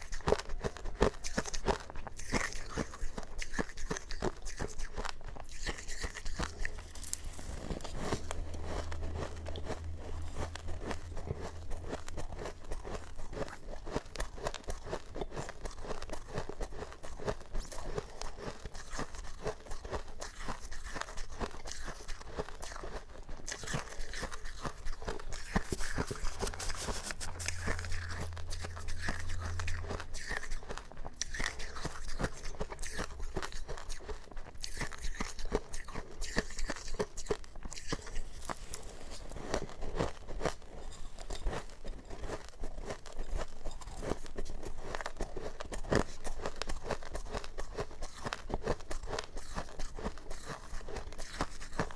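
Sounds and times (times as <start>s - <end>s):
chewing crunchy frost: 0.0s - 51.9s
faint low hum: 5.4s - 16.4s, 23.5s - 33.4s.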